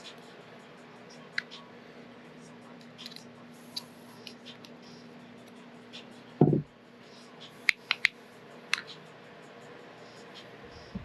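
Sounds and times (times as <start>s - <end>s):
dull thump: 6.4s - 6.6s.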